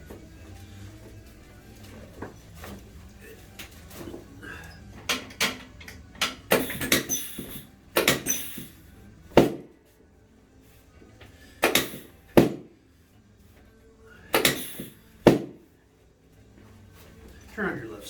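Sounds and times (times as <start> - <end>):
knocks and thuds on treatment table: 9.4 - 9.7, 11.6 - 12.7, 14.4 - 15.7.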